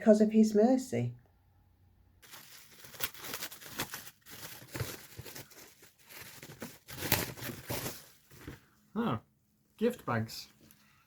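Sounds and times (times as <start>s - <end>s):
wrapping paper tearing and crinkling: 2.2s - 8.5s.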